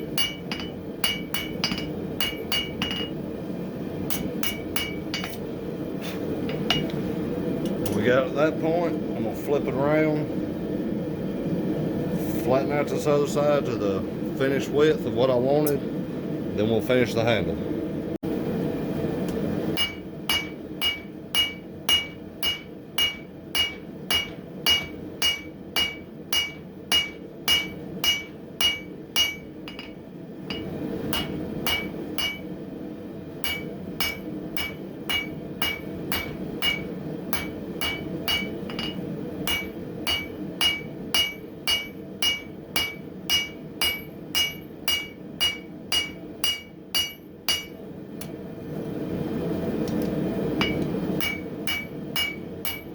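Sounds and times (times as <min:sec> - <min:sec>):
hammer striking steel on anvil: 0:00.0 - 0:03.2, 0:04.0 - 0:05.5, 0:06.4 - 0:07.0, 0:19.8 - 0:32.6, 0:33.4 - 0:48.4, 0:50.6 - 0:52.9
forge hum: 0:00.0 - 0:52.9.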